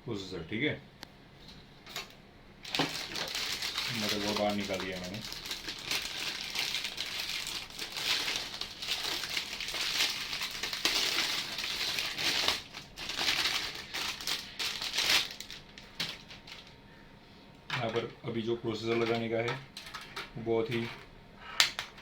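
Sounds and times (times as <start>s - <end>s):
plastic packaging crinkling: 2.0s - 16.8s, 18.9s - 20.9s.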